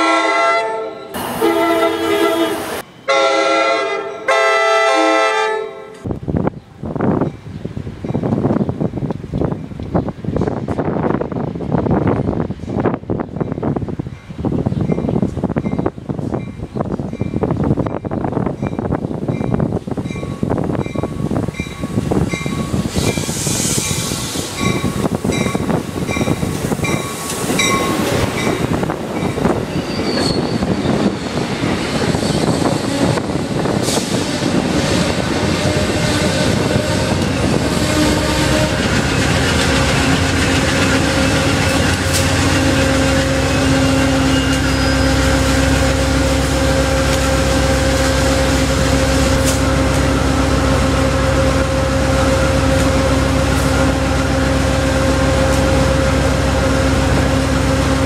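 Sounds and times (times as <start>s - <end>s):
diesel locomotive engine drone: 0.0s - 58.0s
train wheels clattering on rails: 12.2s - 45.0s.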